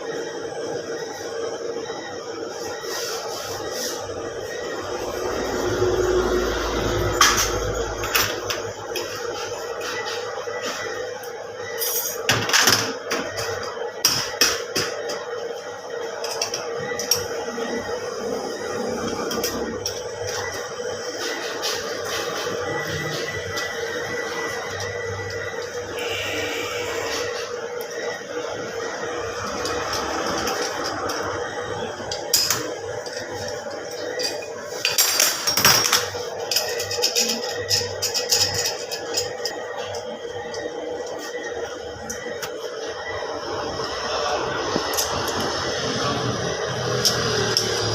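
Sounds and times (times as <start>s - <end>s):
steady machine hum: 0.0s - 47.9s
metal tools clinking on parts: 34.0s - 39.6s.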